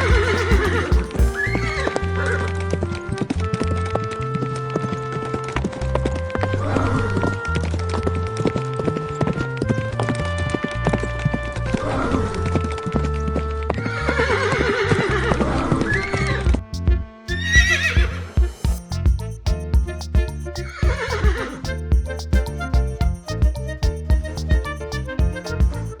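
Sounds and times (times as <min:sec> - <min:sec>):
hooves clip-clopping: 0:00.0 - 0:01.5, 0:16.5 - 0:25.9
background music: 0:00.0 - 0:26.0.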